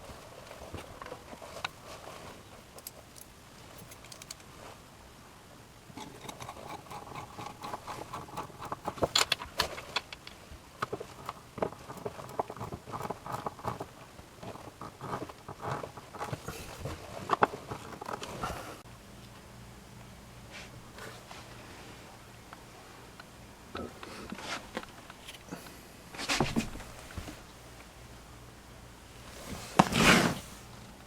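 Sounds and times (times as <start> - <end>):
metal brackets clicking and rattling: 2.7 - 4.4, 5.9 - 10.3.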